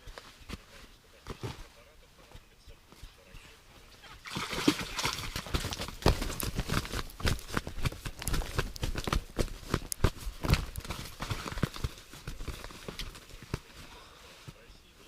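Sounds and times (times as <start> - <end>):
sharp knocks and crunches: 4.3 - 13.9.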